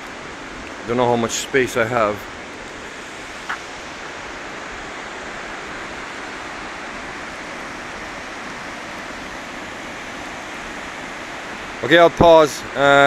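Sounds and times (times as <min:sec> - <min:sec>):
rush of fast-flowing water: 0:00.0 - 0:13.0.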